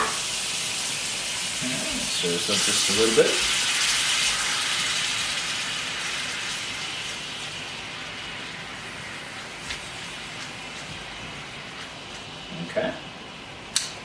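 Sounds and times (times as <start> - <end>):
sizzling in a frying pan: 0.0 - 14.0.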